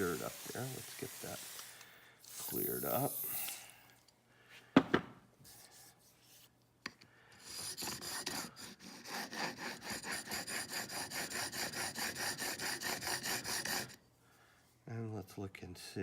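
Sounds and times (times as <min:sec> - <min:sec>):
chisel rubbing on sharpening stone: 0:07.4 - 0:14.0.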